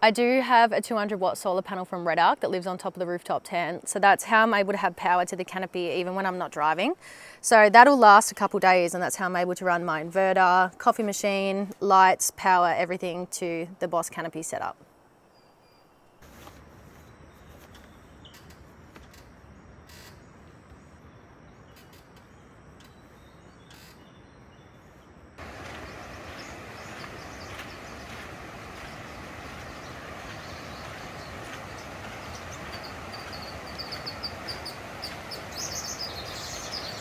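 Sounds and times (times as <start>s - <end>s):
outdoor background noise: 0.0s - 37.0s
faint chirps: 20.0s - 37.0s.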